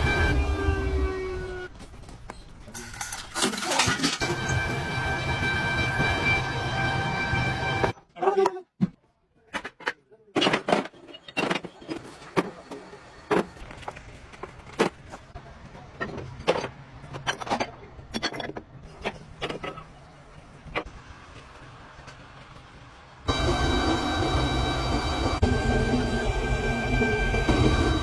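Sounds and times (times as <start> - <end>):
machine hum: 23.2 - 28.0.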